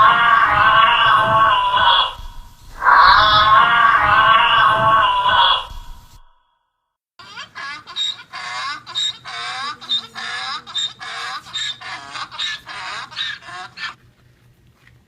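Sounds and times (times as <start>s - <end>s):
rapid short animal calls: 7.8s - 14.0s.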